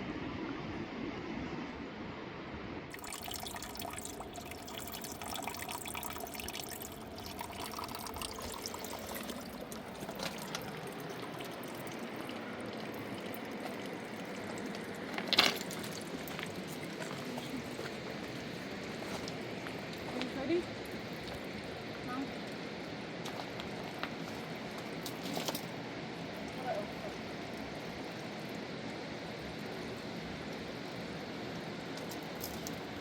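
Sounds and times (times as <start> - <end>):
river water rushing: 2.9 - 24.7.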